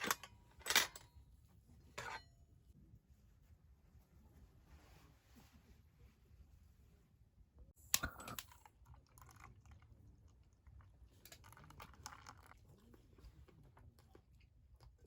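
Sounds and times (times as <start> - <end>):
tableware clicks and taps: 2.0 - 2.2.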